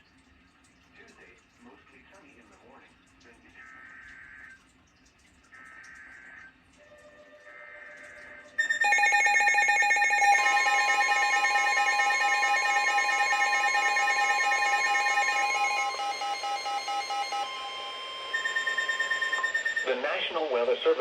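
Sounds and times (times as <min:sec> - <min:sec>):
electronic alarm tones: 0:06.8 - 0:20.6
rapid beeping: 0:08.6 - 0:21.0.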